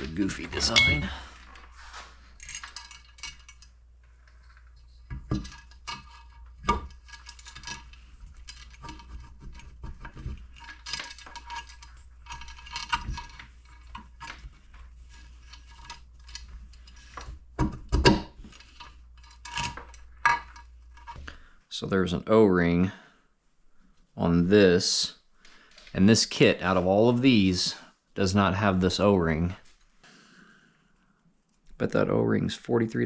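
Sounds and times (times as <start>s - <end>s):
metal parts clinking: 0.3s - 1.3s, 2.4s - 3.8s, 4.4s - 9.1s, 10.4s - 17.3s, 18.0s - 21.2s.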